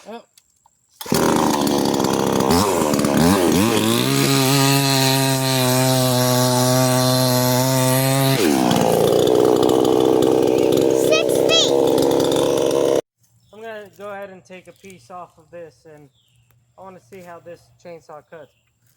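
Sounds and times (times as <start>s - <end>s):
chainsaw revving: 1.0s - 13.0s.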